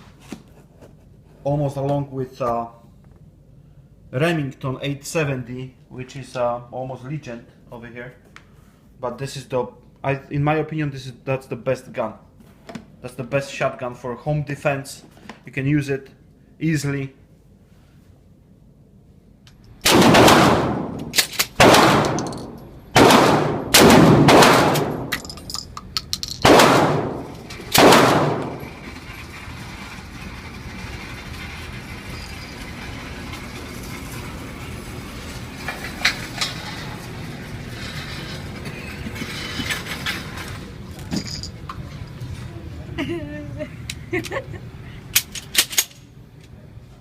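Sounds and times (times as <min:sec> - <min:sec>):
shotgun shots: 0:19.8 - 0:25.1, 0:26.4 - 0:28.8.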